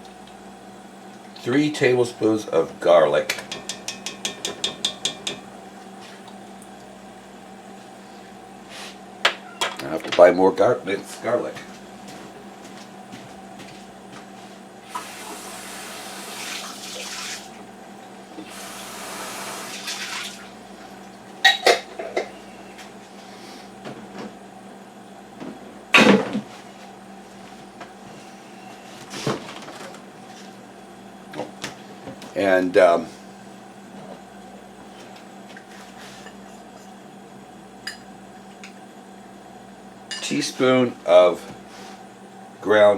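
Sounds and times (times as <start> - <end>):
low mechanical hum: 0.0 - 42.9
kitchen tap running: 14.9 - 17.5, 18.4 - 20.5.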